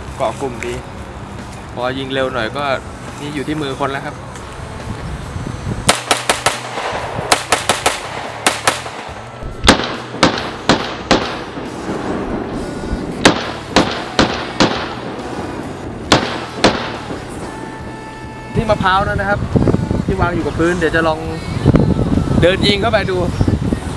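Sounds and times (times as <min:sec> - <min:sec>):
pistol shots: 0:05.9 - 0:12.2, 0:13.2 - 0:17.4.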